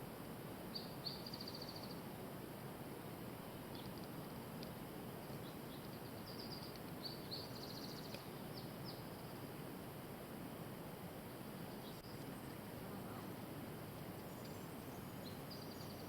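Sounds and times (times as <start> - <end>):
steady outdoor hiss: 0.0 - 16.0
songbirds chirping: 0.7 - 2.1, 3.4 - 9.7, 11.2 - 16.0.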